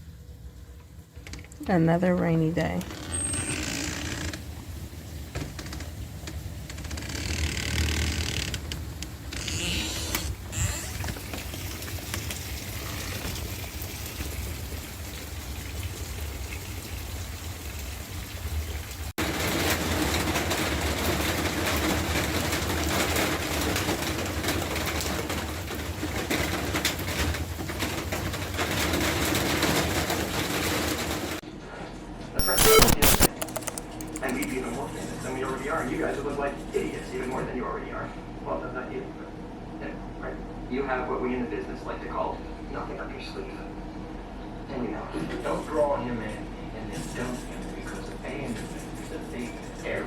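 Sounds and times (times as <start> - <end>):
steady rain falling: 3.9 - 31.4.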